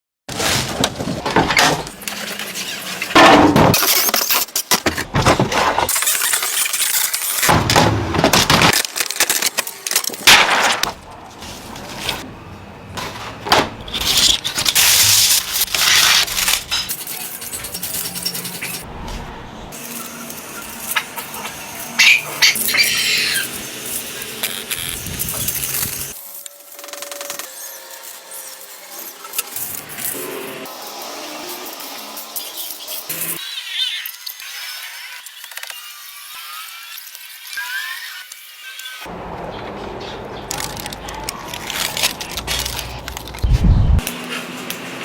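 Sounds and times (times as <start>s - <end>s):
small hard objects clattering: 40.5s - 43.5s.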